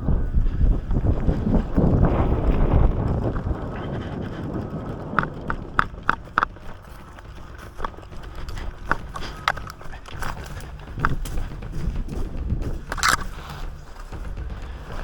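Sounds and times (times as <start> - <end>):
wind rumble on microphone: 0.0 - 15.0
sharp clicks and knocks: 0.6 - 13.5.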